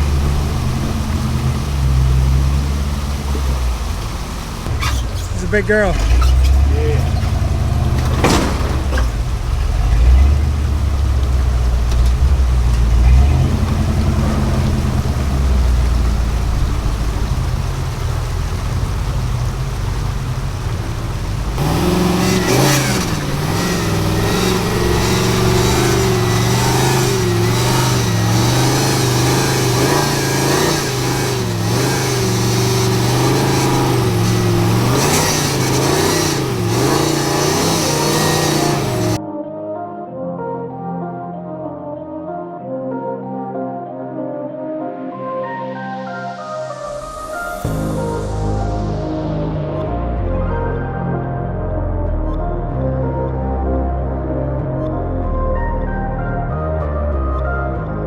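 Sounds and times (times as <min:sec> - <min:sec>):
off-road vehicle engine revving: 0:00.0 - 0:39.2.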